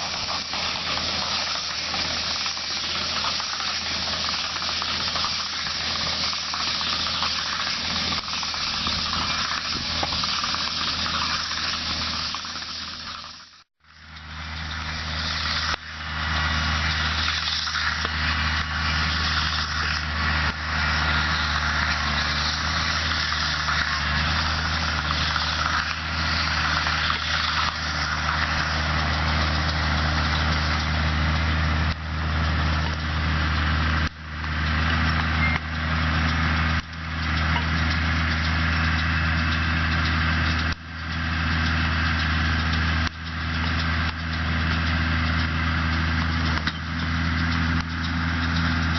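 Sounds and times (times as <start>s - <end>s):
loud even hiss: 0.0s - 36.8s
tractor engine running: 0.0s - 48.9s.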